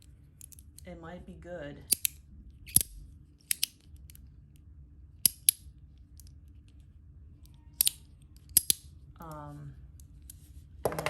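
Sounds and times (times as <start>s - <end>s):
metal fidget slider clicking: 1.9s - 3.8s, 7.8s - 8.8s.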